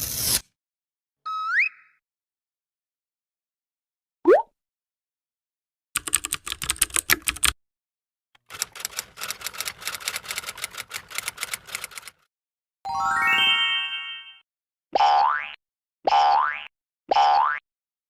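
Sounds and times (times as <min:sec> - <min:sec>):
keyboard typing clicks: 0:06.0 - 0:07.6, 0:08.4 - 0:12.1
rising chiming notes: 0:12.9 - 0:14.4.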